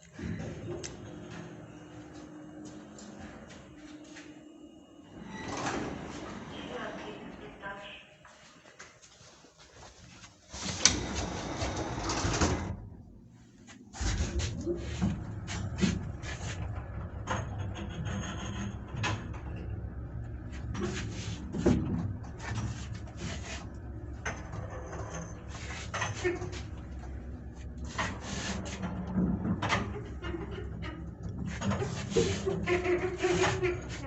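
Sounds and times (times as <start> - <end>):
lift car humming: 0.0 - 7.8, 10.6 - 34.0
lift door sliding and rattling: 0.1 - 3.8, 5.1 - 7.4, 10.5 - 13.1, 13.9 - 34.0
creaks and knocks: 14.0 - 19.8, 24.0 - 34.0
guide shoes scraping rails: 27.8 - 34.0.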